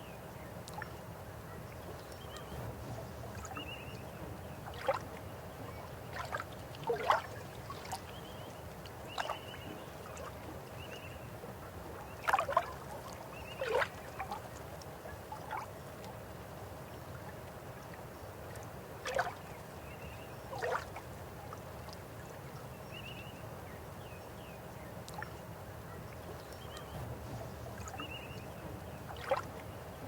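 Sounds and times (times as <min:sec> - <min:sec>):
river water running: 0:00.0 - 0:30.0.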